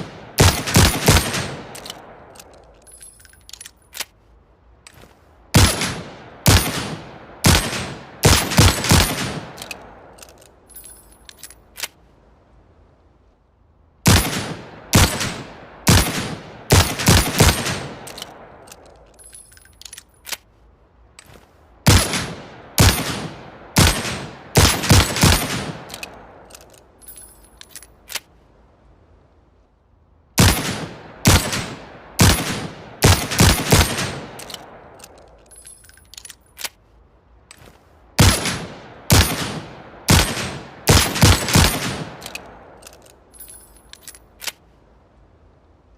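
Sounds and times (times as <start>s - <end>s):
faint metallic clicks: 1.6s - 5.3s, 9.5s - 12.1s, 17.9s - 21.6s, 25.4s - 28.4s, 34.2s - 38.0s, 41.6s - 44.8s.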